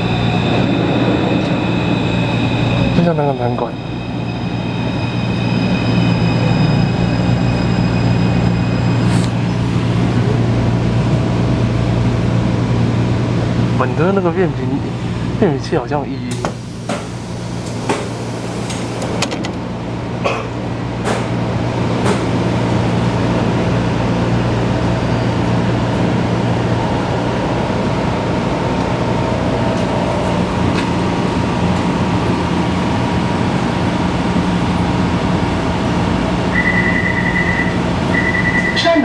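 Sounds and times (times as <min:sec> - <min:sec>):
train interior low hum: 0:00.0 - 0:39.0
high beeping tone: 0:36.5 - 0:39.0.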